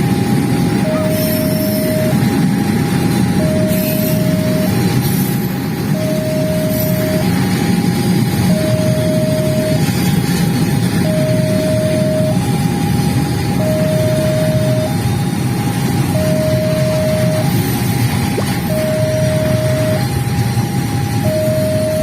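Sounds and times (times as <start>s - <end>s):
level crossing alarm two tones: 0.8s - 2.4s, 3.3s - 5.0s, 5.9s - 7.6s, 8.4s - 10.0s, 10.9s - 12.5s, 13.4s - 15.2s, 16.1s - 17.6s, 18.3s - 22.0s.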